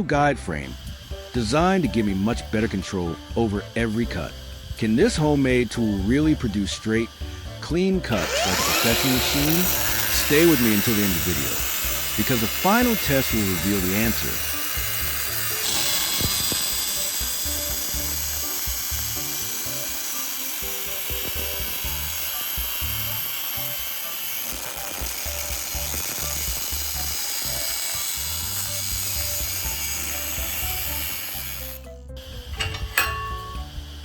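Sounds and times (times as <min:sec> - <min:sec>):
background music: 0:00.0 - 0:34.0
high-pitched power tool: 0:00.0 - 0:34.0.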